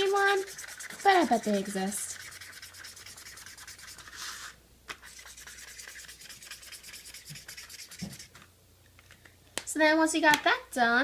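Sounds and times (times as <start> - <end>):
fast scribbling on paper plate: 0.0 - 4.4, 5.0 - 8.4.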